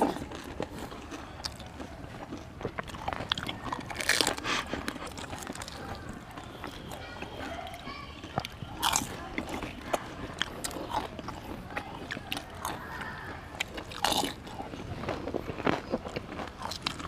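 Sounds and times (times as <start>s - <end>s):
crisp shells crunching when chewed: 0.0s - 17.0s.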